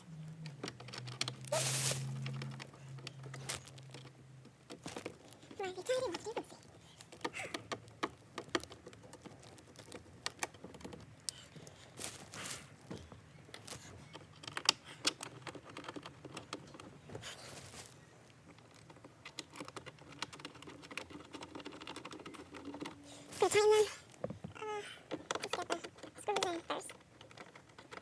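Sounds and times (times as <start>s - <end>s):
plastic parts clicking and tapping: 0.2s - 28.0s
short rustles: 1.4s - 4.1s, 11.4s - 14.1s, 16.9s - 18.0s, 23.1s - 24.2s.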